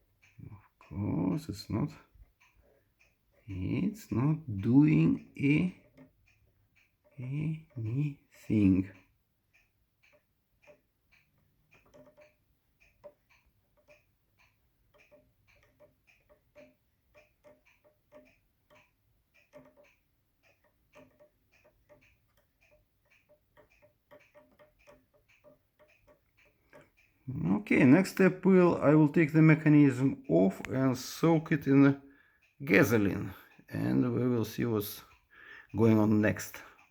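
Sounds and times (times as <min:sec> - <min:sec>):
faint irregular clock clicking: 0:00.0 - 0:36.9.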